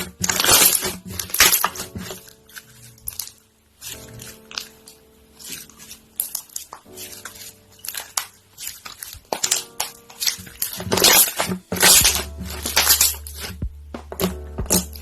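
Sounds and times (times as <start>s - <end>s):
slime squishing and popping: 0.0s - 15.0s.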